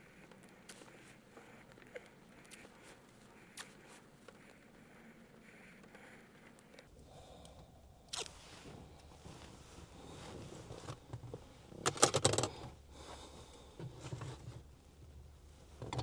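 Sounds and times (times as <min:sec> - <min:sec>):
handling clicks: 0:11.9 - 0:12.6.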